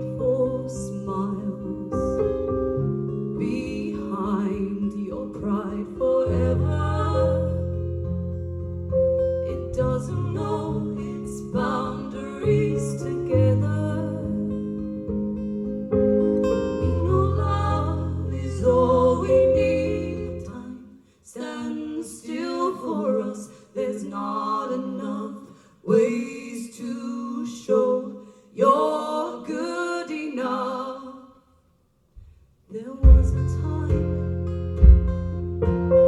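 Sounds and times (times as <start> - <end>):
strummed acoustic guitar: 0.0 - 20.5, 33.0 - 36.0
person singing: 3.4 - 7.7, 9.5 - 14.6, 16.8 - 25.3, 32.7 - 34.4
low bass notes: 33.1 - 36.0.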